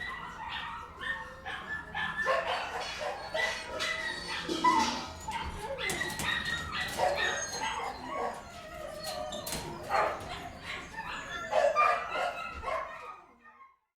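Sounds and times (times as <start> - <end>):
dogs barking and whining: 0.0 - 13.9
dogs scratching at kennel gates: 2.3 - 12.9.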